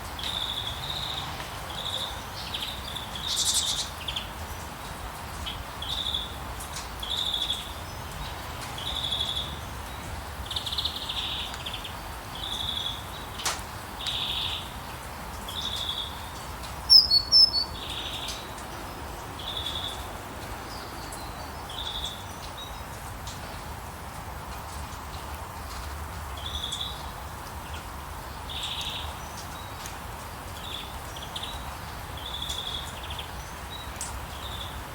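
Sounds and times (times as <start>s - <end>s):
bird repeating high call: 16.9s - 17.8s
burst of high bird chirps: 16.9s - 17.8s.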